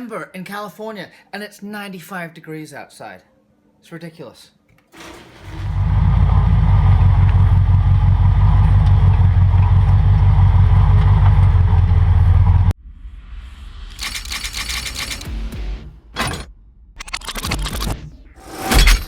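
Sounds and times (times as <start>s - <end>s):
vehicle engine running: 5.0s - 12.7s.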